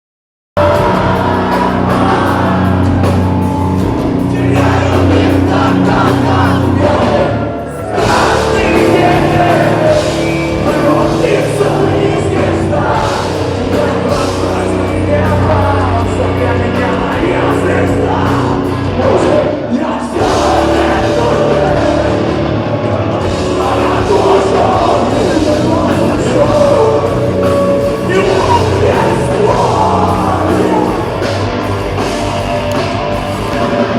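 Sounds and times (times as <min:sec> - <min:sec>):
person singing: 0:00.6 - 0:22.4, 0:23.1 - 0:31.4
heavy rock band playing: 0:00.6 - 0:33.9.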